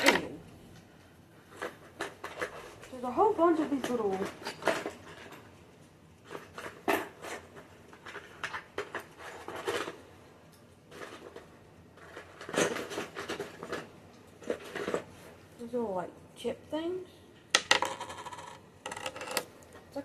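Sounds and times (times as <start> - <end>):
plastic toy pieces clattering: 17.6 - 19.5.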